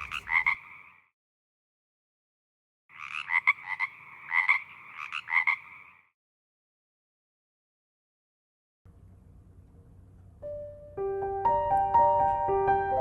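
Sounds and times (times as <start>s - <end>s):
frog croaking: 0.0s - 1.1s, 2.9s - 6.2s.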